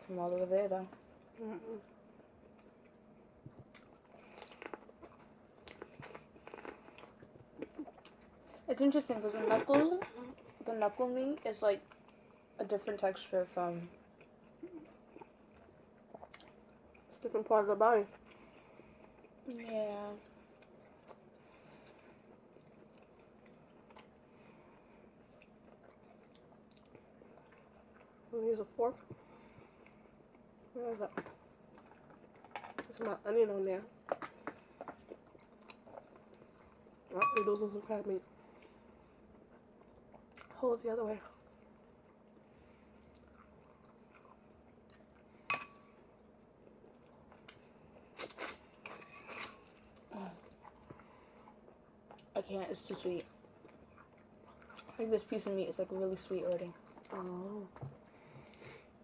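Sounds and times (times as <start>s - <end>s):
faint chewing: 0.2s - 13.2s, 13.9s - 59.0s
fork clinking on dish: 37.2s - 37.6s.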